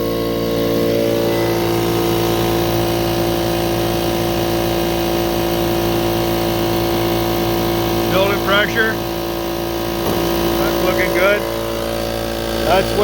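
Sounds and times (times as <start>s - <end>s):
air compressor running: 0.0s - 13.0s.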